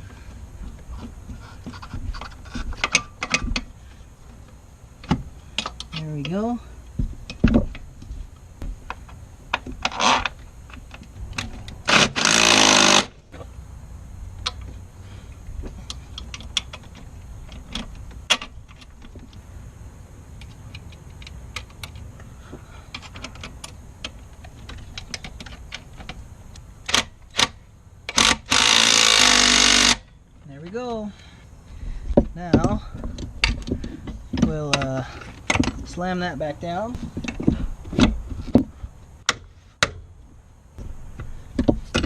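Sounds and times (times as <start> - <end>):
metallic clicks and knocks: 1.6 - 3.7, 32.4 - 36.0
power tool burst: 11.8 - 13.2.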